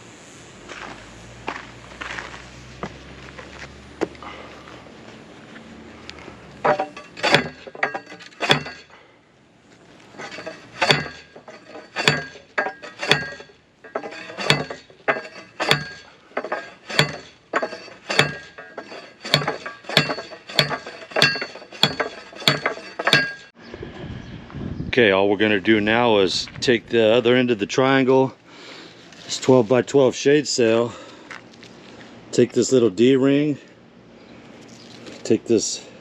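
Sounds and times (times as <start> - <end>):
post driver clanging on post: 6.6 - 9.0, 10.2 - 23.5.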